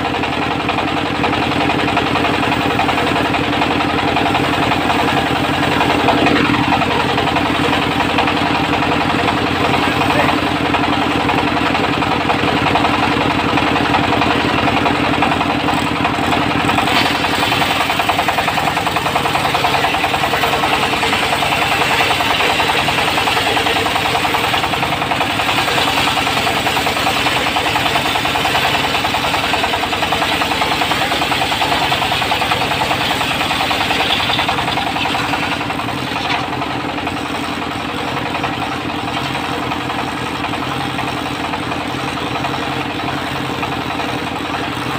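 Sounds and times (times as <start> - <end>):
diesel engine running under load: 0.0 - 44.9.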